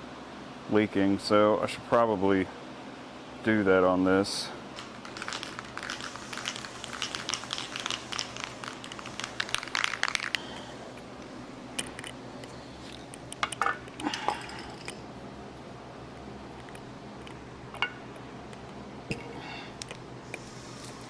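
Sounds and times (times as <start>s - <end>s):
crinkling handling clicks: 4.8s - 15.0s, 16.5s - 19.2s.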